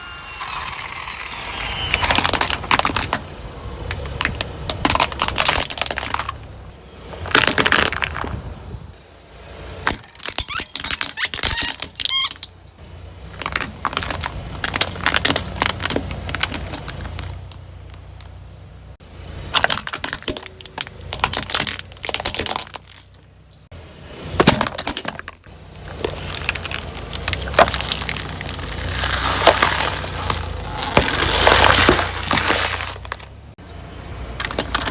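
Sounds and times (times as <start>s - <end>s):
tyres crushing crunchy objects: 1.8s - 8.5s, 13.3s - 18.2s, 19.4s - 23.3s, 24.2s - 33.6s, 34.3s - 34.9s.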